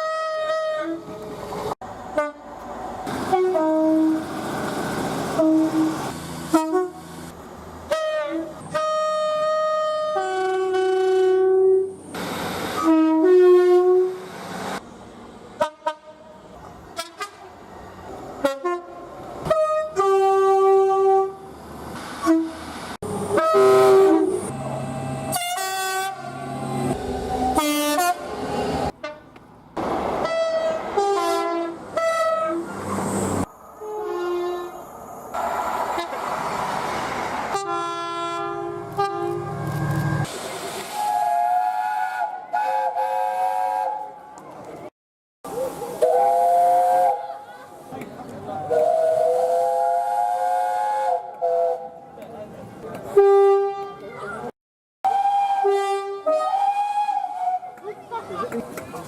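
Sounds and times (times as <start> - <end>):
two-tone train horn blasts: 0.0 - 1.1, 2.1 - 2.5, 3.3 - 4.2, 5.4 - 7.0, 7.9 - 11.9, 12.8 - 14.2, 16.9 - 17.5, 18.4 - 21.4, 23.3 - 24.6, 25.3 - 26.4, 27.5 - 28.3, 30.2 - 32.6, 33.8 - 34.8, 37.5 - 39.6, 41.0 - 44.2, 48.7 - 52.0, 53.1 - 54.0, 55.1 - 57.7
train running noise: 0.8 - 44.9.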